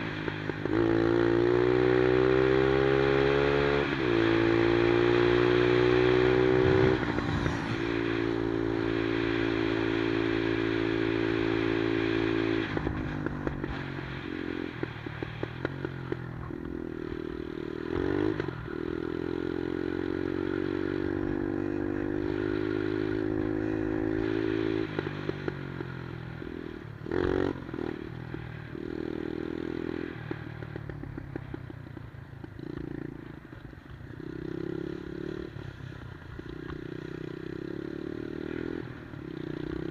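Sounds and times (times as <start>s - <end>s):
minibike engine revving: 0.0s - 28.1s.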